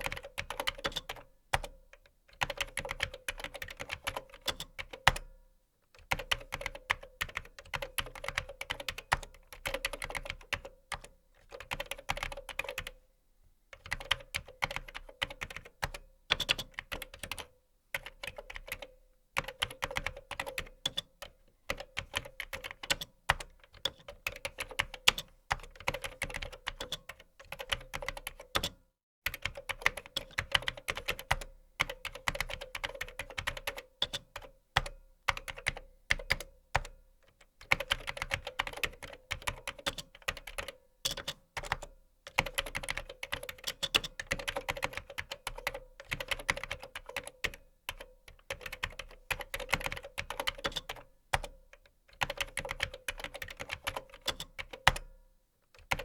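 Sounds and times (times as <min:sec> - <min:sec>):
fast typing on computer keyboard: 0:00.0 - 0:01.8, 0:02.4 - 0:05.3, 0:06.0 - 0:13.0, 0:13.8 - 0:55.1, 0:55.8 - 0:56.0.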